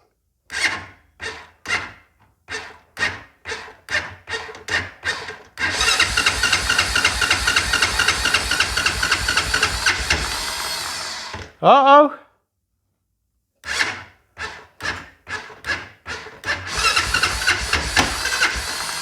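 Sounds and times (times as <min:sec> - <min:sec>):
engine starter cranking: 0:05.6 - 0:11.1, 0:16.5 - 0:19.0.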